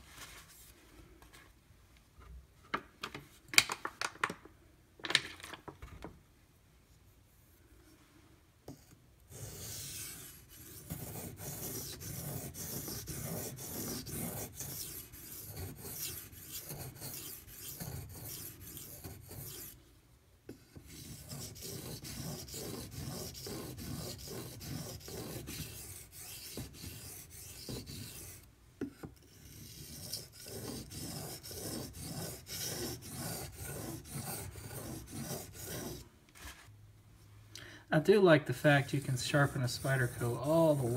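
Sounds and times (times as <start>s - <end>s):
knife rasping on whetstone: 9.3s - 19.8s, 20.8s - 28.5s, 29.1s - 36.0s, 38.8s - 40.9s.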